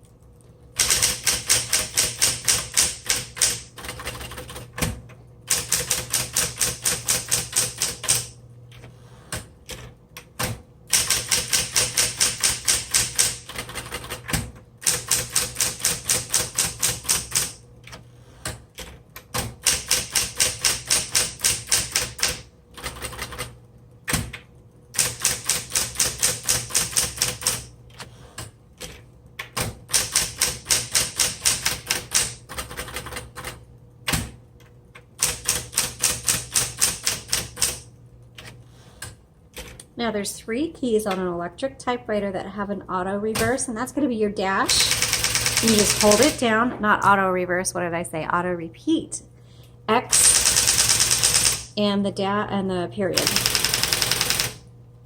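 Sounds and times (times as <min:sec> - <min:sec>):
typewriter motor hum: 0:00.7 - 0:39.9, 0:44.7 - 0:46.6, 0:50.1 - 0:51.8, 0:53.1 - 0:54.7
typewriter key strikes: 0:00.8 - 0:03.7, 0:10.9 - 0:13.7, 0:19.3 - 0:22.4, 0:29.5 - 0:32.9, 0:44.7 - 0:46.4.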